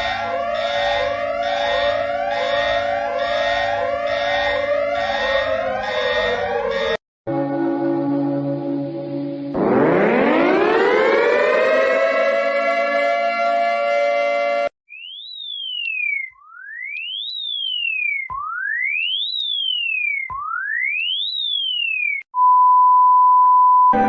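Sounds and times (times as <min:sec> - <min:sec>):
pure tone sweeping up and down: 0:00.0 - 0:14.7
siren chord winding up: 0:00.0 - 0:22.3.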